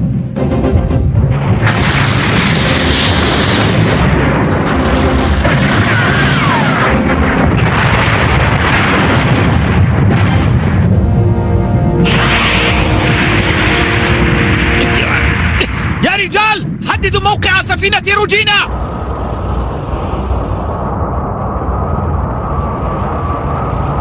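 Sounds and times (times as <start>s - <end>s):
dramatic background music: 0.0s - 16.0s
explosions booming: 0.0s - 17.8s
cannon fire: 1.2s - 11.3s, 12.0s - 16.8s.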